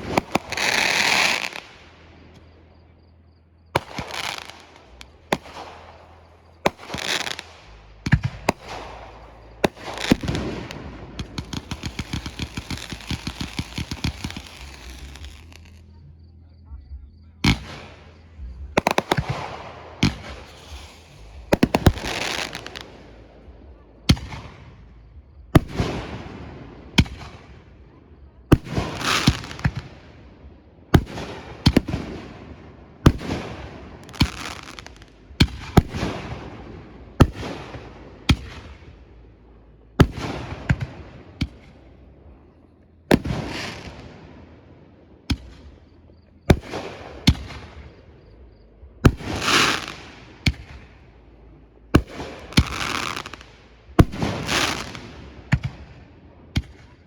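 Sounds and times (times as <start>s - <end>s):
fireworks hissing: 0.0s - 1.9s, 3.8s - 15.8s, 18.8s - 22.9s, 34.0s - 35.1s, 49.2s - 50.6s, 52.5s - 53.6s, 54.3s - 55.1s
fireworks bangs: 0.0s - 2.8s, 3.7s - 15.9s, 17.4s - 24.8s, 28.5s - 30.2s, 30.9s - 39.2s, 40.0s - 42.5s, 43.1s - 44.6s, 45.2s - 48.4s, 49.0s - 51.4s, 52.0s - 57.0s.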